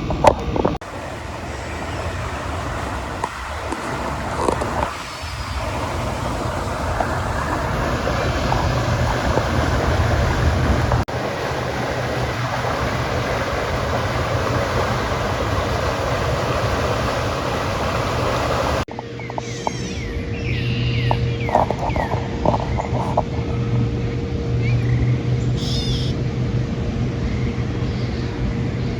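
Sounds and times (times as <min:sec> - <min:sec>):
water noise from kayak: 0:00.0 - 0:19.9, 0:20.7 - 0:28.9
wind rumble on microphone: 0:00.0 - 0:28.9
birdsong: 0:18.9 - 0:28.9.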